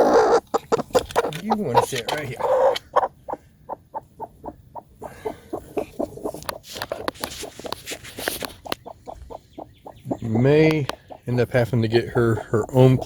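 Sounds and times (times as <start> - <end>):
hen clucking: 0.0 - 13.0
rustling: 5.7 - 8.9.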